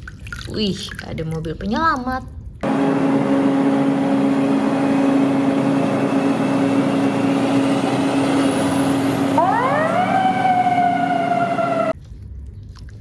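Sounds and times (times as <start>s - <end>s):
heavy engine running: 2.6s - 12.0s
siren winding up: 6.5s - 12.0s.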